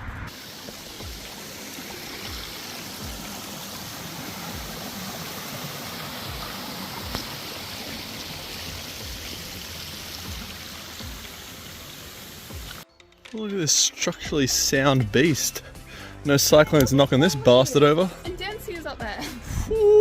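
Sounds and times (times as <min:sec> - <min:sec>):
creek water flowing: 0:00.3 - 0:12.8.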